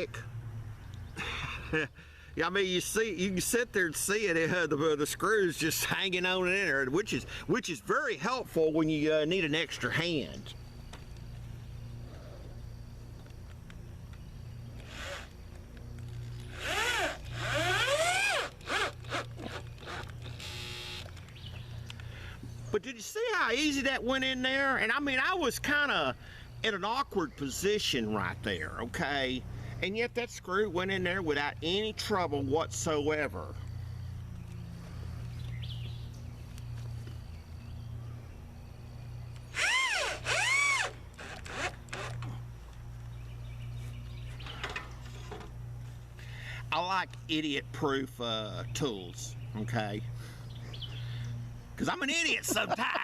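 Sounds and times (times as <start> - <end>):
power driver motor whirring: 14.8 - 21.2, 39.4 - 42.4.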